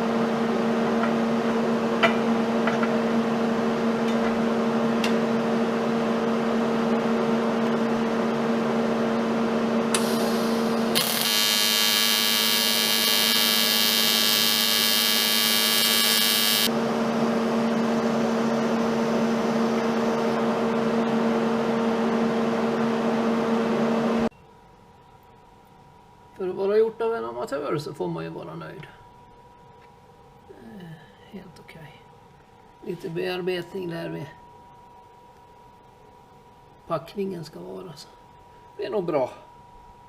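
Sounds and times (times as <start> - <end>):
electrical hum: 0.0 - 24.3
hissing buzz: 9.9 - 16.7.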